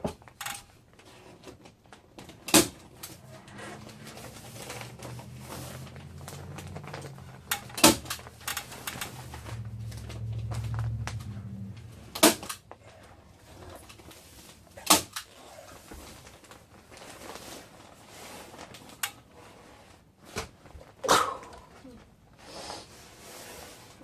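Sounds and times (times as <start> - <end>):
low steady hum: 0.9 - 14.8.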